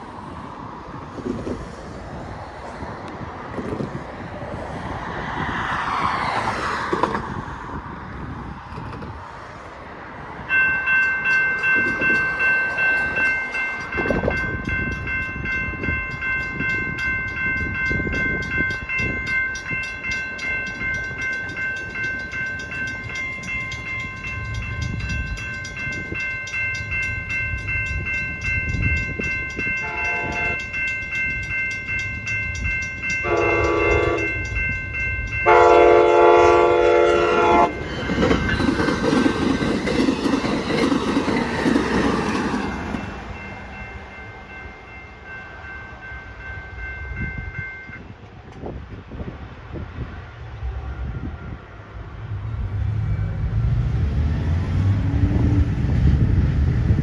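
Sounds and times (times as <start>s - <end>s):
train rumble: 0.0s - 57.0s
vehicle passing: 1.5s - 8.6s, 52.0s - 57.0s
railroad crossing bell ringing: 10.4s - 53.7s
locomotive horn blasts: 29.8s - 30.6s, 33.2s - 34.5s, 35.4s - 37.8s.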